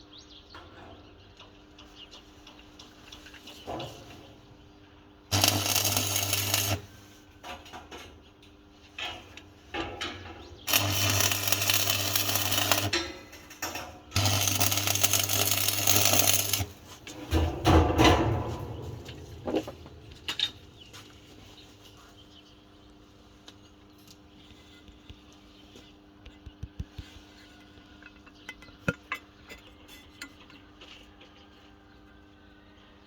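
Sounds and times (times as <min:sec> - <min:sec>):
arc welding hiss and crackle: 0:05.3 - 0:07.2, 0:10.7 - 0:17.1.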